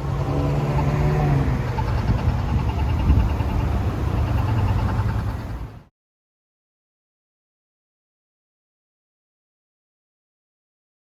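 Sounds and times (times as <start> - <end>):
motor vehicle engine rumble: 0.0 - 5.9.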